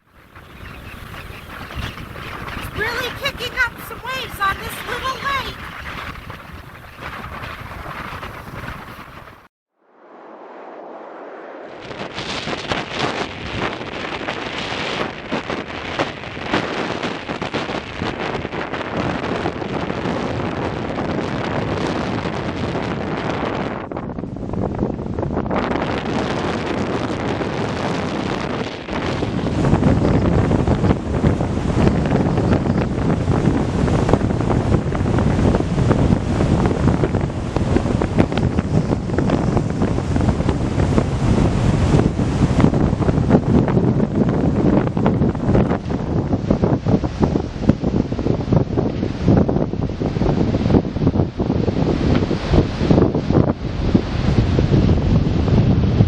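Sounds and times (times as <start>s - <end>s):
waves washing on shore: 0.0s - 9.5s, 28.5s - 55.5s
gusty wind on microphone: 0.0s - 56.0s.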